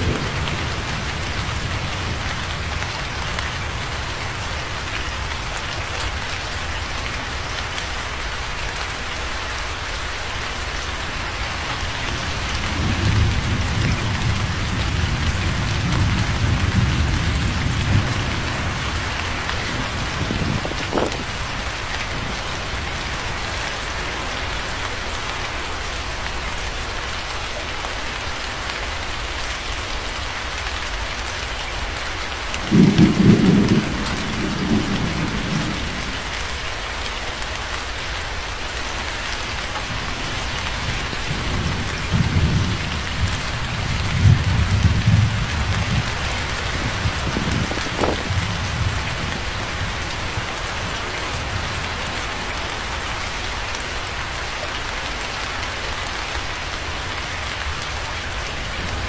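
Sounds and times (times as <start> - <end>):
sharp thunder crack: 0.0 - 1.6
thunder rumbling: 0.0 - 4.7, 11.8 - 23.7, 32.6 - 36.4, 39.9 - 52.3
steady rain: 0.0 - 59.0.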